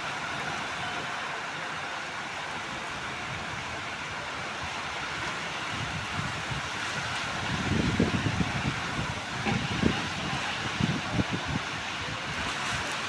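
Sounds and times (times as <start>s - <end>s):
wind gusts on microphone: 2.6s - 13.0s
heavy rain hissing: 5.5s - 13.0s.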